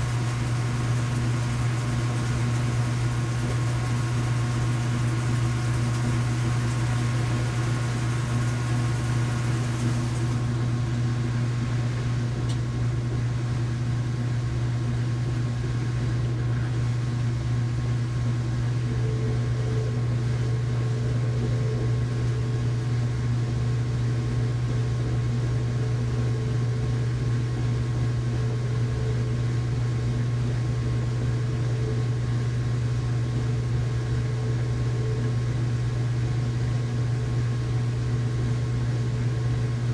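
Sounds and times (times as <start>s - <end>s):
washing machine motor hum: 0.0s - 39.9s.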